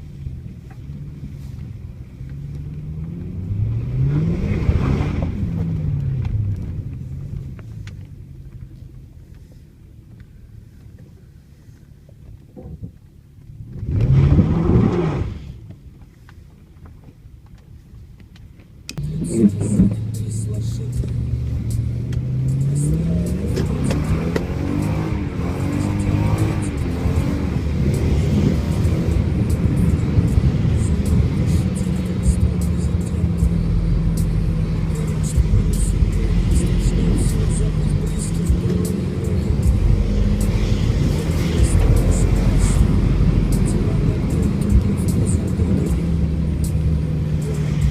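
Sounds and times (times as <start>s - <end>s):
car exhaust revving and idling: 0.0s - 47.9s
person talking: 19.0s - 21.3s, 22.6s - 24.3s, 27.9s - 46.6s.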